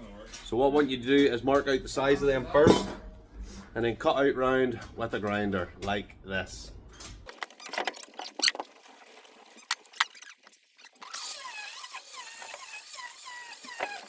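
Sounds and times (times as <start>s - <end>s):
handling clicks and knocks: 4.0s - 8.7s
angle grinder cutting concrete: 11.1s - 14.0s.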